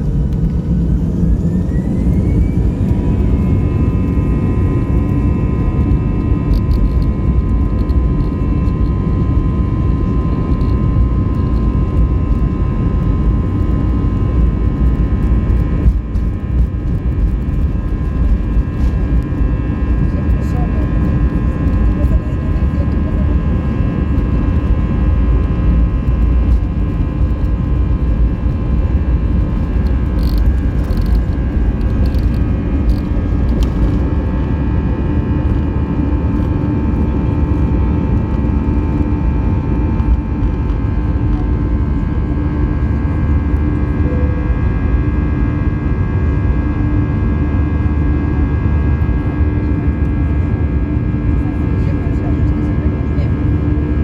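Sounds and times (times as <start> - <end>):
whining engine tones: 0.0 - 46.6
jet engine cabin rumble: 0.0 - 54.0.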